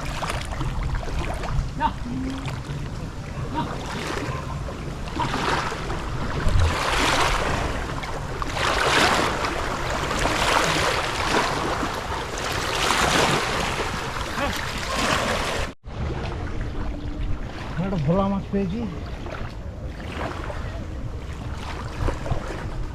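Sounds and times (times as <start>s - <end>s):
river waves washing: 0.0s - 22.9s
wind buffeting microphone: 0.0s - 22.9s.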